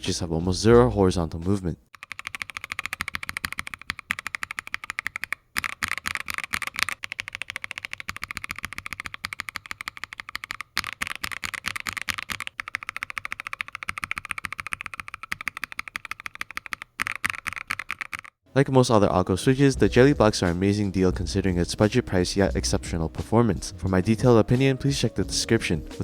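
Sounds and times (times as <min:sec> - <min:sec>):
fast typing on mechanical keyboard: 0:01.9 - 0:18.4.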